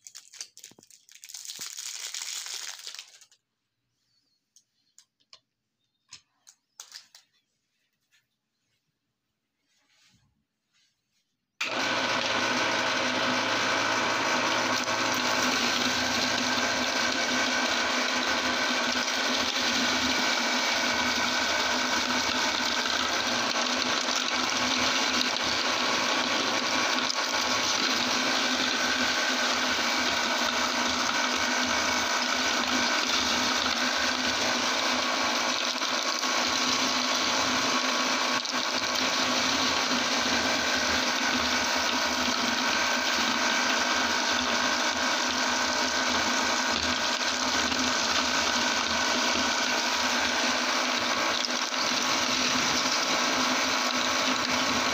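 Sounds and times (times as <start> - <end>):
meat grinder motor whirring: 11.6 - 54.9.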